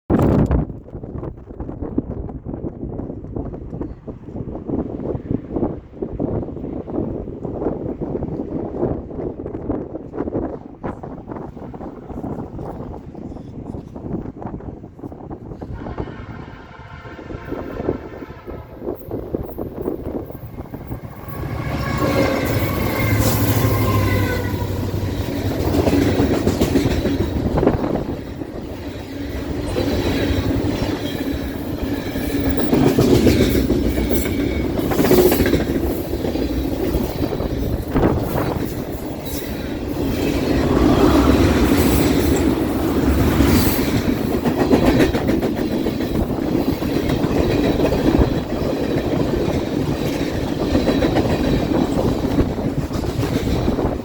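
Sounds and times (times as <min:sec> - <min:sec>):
train rumbling past: 0:00.3 - 0:54.0
train horn: 0:15.6 - 0:19.0, 0:21.2 - 0:25.1.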